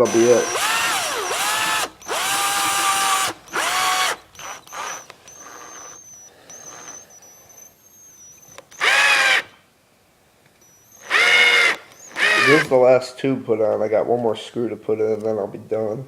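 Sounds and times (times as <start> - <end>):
power drill motor whine: 0.0 - 9.6, 10.6 - 12.8.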